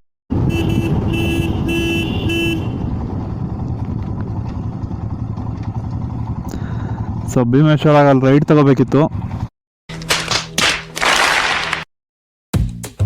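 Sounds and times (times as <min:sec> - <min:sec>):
horn toots: 0:00.3 - 0:03.0
motorcycle engine running: 0:00.7 - 0:07.6.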